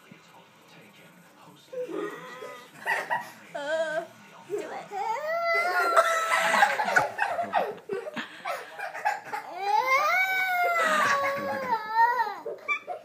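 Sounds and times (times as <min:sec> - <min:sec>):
laughter: 0:02.7 - 0:03.4, 0:05.7 - 0:09.5.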